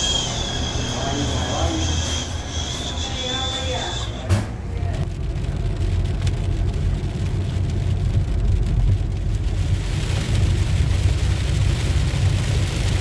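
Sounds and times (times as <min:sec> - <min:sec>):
road hiss: 0:00.0 - 0:04.2
engine and road rumble: 0:00.0 - 0:13.0.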